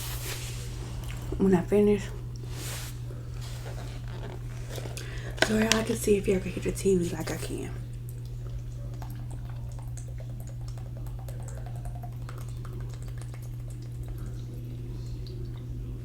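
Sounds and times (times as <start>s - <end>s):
steady low hum: 0.0s - 16.0s
person eating noodles: 2.4s - 5.5s.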